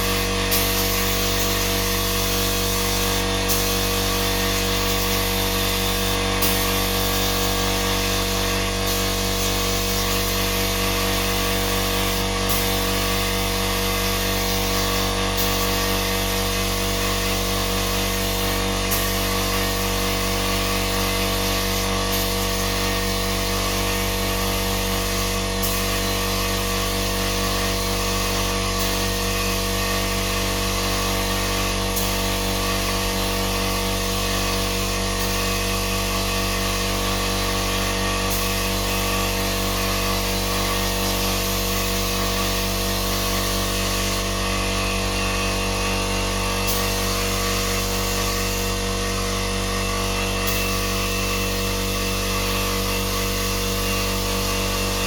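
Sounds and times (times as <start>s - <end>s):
power tool motor humming: 0.0s - 55.0s.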